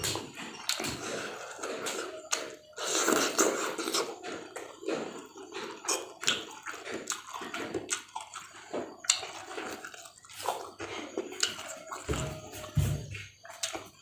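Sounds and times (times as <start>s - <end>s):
wet chewing with crunches: 0.0s - 14.0s.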